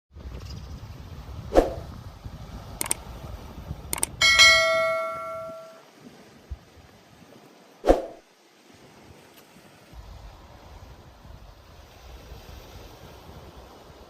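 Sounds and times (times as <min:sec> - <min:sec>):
sharp clicks: 0:04.0 - 0:04.2
bell-like metallic ring: 0:04.2 - 0:05.8.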